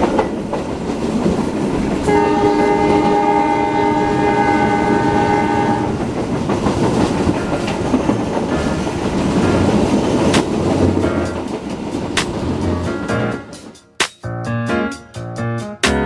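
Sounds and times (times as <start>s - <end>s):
train rumbling on rails: 0.0s - 14.0s
train horn: 2.0s - 6.1s
sharp rail clacks: 5.8s - 14.2s.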